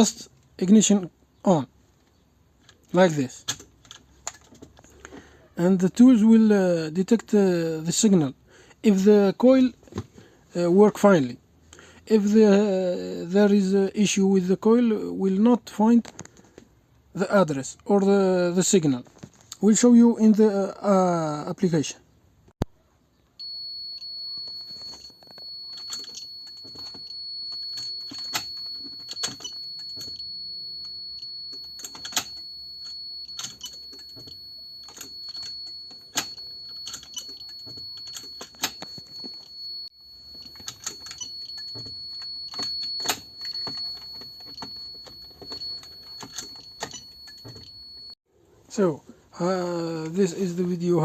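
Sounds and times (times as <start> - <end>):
continuous high-pitched tone: 22.7 - 51.0
keys rattling: 23.4 - 48.1.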